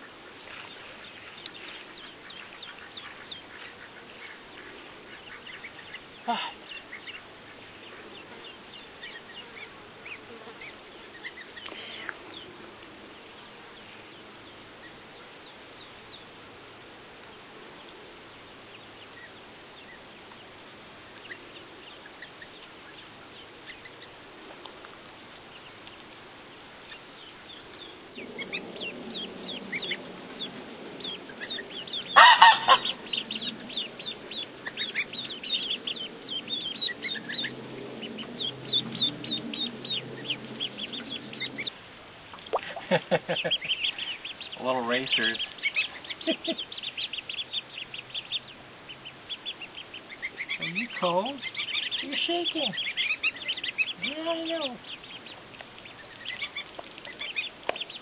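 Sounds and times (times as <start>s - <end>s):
goslings and ducklings peeping: 0.0s - 58.0s
loud honk: 32.2s - 32.9s.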